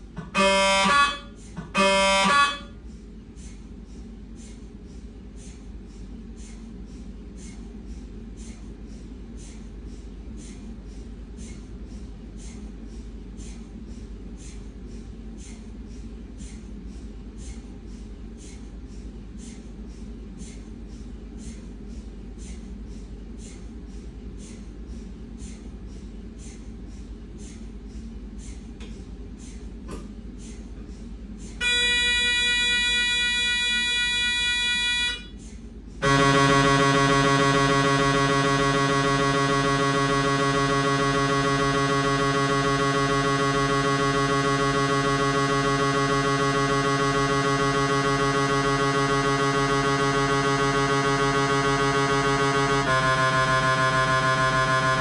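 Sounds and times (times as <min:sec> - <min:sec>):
low steady hum: 0:00.0 - 0:55.0
mri scanner gradient tones: 0:36.0 - 0:55.0.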